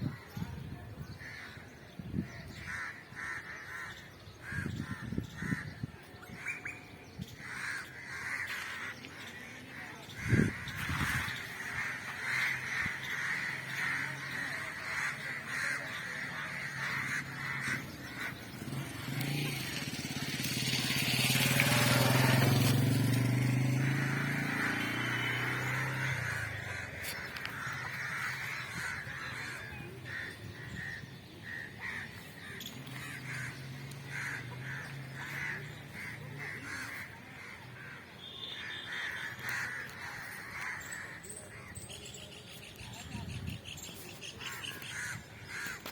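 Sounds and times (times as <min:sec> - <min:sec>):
birds calling: 0:00.0 - 0:45.9
motor vehicle passing: 0:07.4 - 0:45.9
faint engine drone: 0:10.2 - 0:41.8.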